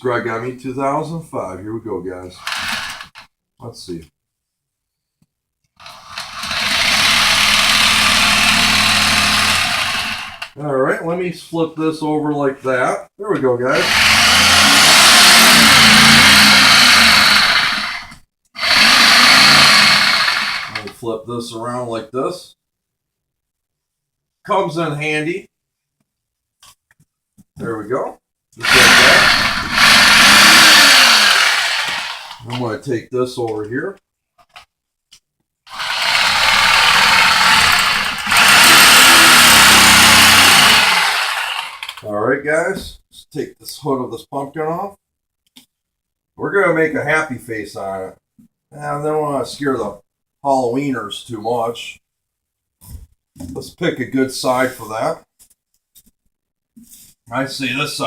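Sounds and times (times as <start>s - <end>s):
reciprocating saw cutting pumpkin: 2.4s - 3.2s, 5.8s - 10.6s, 13.8s - 20.9s, 28.6s - 32.5s, 35.7s - 42.0s.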